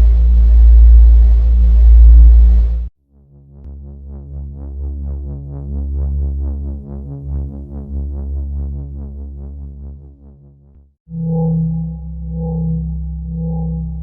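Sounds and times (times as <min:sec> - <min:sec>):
low electronic drone: 0:00.0 - 0:02.9, 0:03.5 - 0:14.0
rapid pulsing blips: 0:00.0 - 0:02.9, 0:11.1 - 0:14.0.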